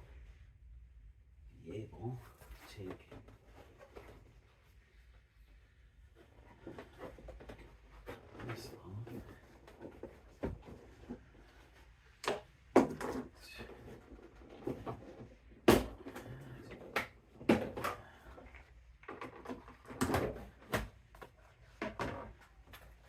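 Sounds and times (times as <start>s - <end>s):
plastic panels knocking and clattering: 6.4s - 23.0s.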